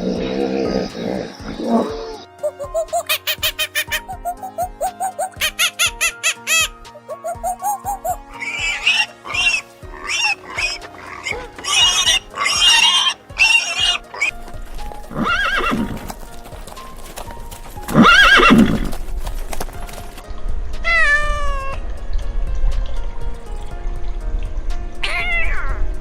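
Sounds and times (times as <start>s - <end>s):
farm animal calls: 0.0s - 19.0s
background music: 0.0s - 26.0s.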